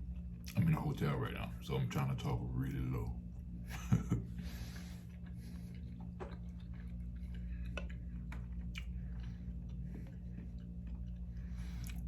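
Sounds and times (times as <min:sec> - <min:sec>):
person chewing wetly: 0:00.0 - 0:01.1, 0:04.6 - 0:12.0
steady low hum: 0:00.0 - 0:12.0.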